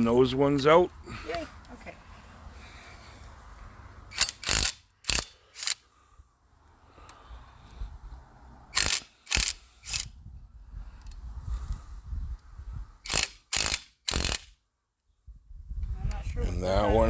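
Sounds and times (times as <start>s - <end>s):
ratchet wrench clicking: 4.1s - 5.8s, 8.7s - 10.1s, 13.0s - 14.5s.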